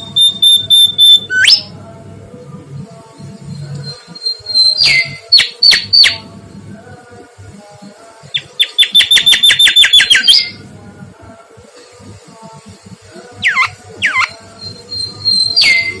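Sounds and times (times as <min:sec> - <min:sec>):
bird whistling: 0:00.0 - 0:01.7, 0:08.4 - 0:10.6, 0:13.4 - 0:16.0.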